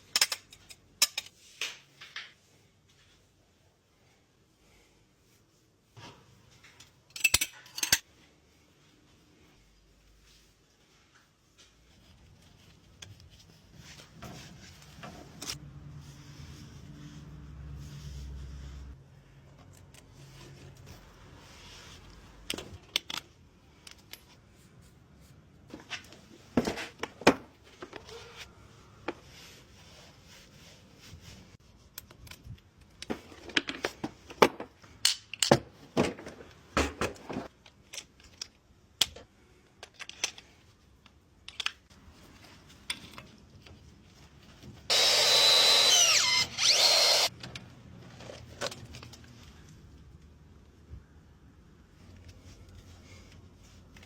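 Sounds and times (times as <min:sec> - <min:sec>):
tools and parts clicking: 0:00.0 - 0:01.4, 0:06.6 - 0:08.1, 0:22.4 - 0:24.4, 0:35.0 - 0:35.7, 0:37.6 - 0:41.9
power tool running: 0:44.9 - 0:47.3.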